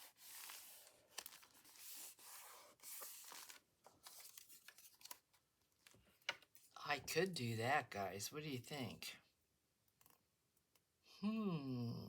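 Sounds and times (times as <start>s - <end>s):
paper rustling: 0.0s - 6.7s.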